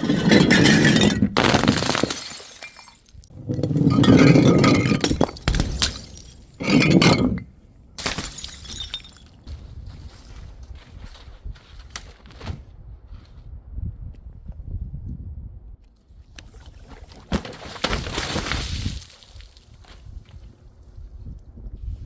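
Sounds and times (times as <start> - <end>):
broken glass clinking: 0.0 - 9.4
glass bottles shattering: 0.0 - 9.4.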